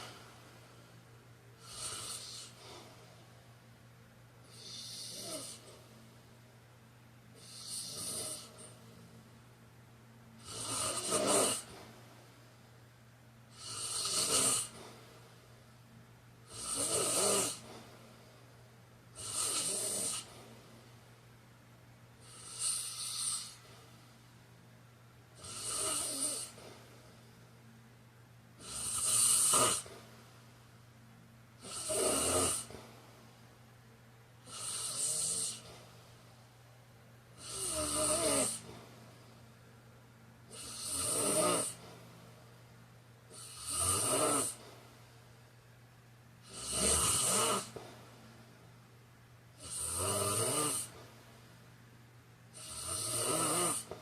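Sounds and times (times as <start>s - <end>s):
man snoring: 1.6s - 2.8s, 4.4s - 5.8s, 7.4s - 8.7s, 10.4s - 12.0s, 13.5s - 15.0s, 16.5s - 17.8s, 19.2s - 20.5s, 22.2s - 23.8s, 25.4s - 26.8s, 28.6s - 30.0s, 31.6s - 32.9s, 34.4s - 35.8s, 37.4s - 38.8s, 40.5s - 41.9s, 43.3s - 44.6s, 46.4s - 47.8s, 49.6s - 51.0s, 52.5s - 54.0s.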